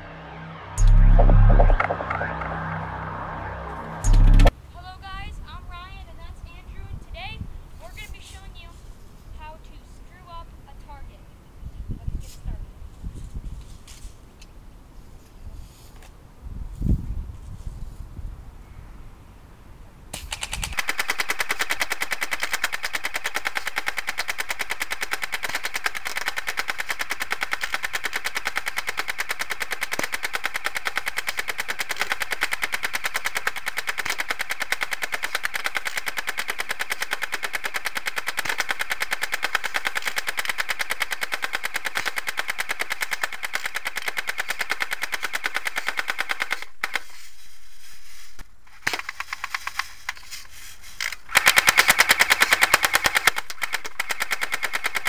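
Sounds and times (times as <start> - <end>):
airsoft gun firing: 20.2 - 47.1, 51.3 - 55.0.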